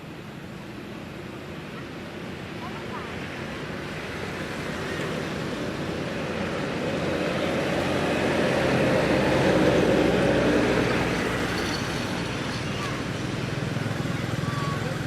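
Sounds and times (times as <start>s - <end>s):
vehicle engine rumble passing: 3.1s - 15.0s.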